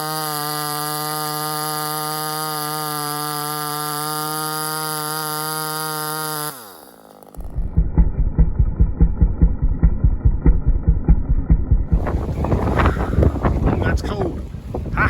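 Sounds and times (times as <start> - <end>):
chainsaw revving and idling: 0.0 - 10.5.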